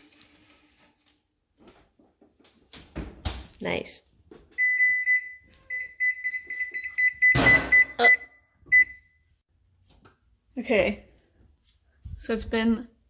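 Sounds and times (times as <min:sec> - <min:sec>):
electronic timer beeping: 0:04.6 - 0:09.1.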